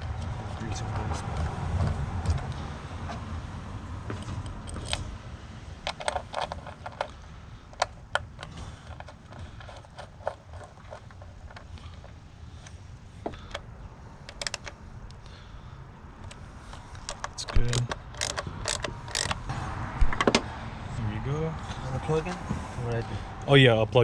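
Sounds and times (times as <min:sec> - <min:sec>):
clicks of tools and parts: 0:05.9 - 0:15.3, 0:16.2 - 0:19.4.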